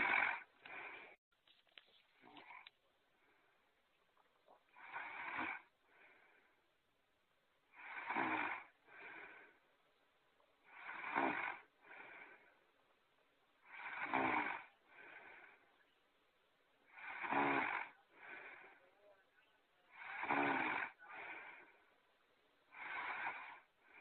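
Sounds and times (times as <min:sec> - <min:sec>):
cartoon snoring: 0:00.0 - 0:01.0, 0:04.7 - 0:05.7, 0:07.7 - 0:09.4, 0:10.6 - 0:12.2, 0:13.6 - 0:15.5, 0:16.9 - 0:18.7, 0:19.9 - 0:21.7, 0:22.7 - 0:24.0.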